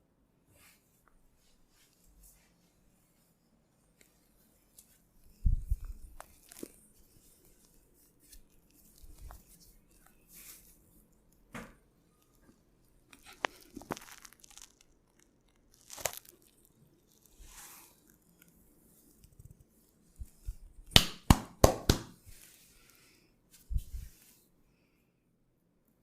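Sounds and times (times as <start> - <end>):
hands rubbing on skin: 23.5 - 24.4
brushing strokes: 23.5 - 24.5.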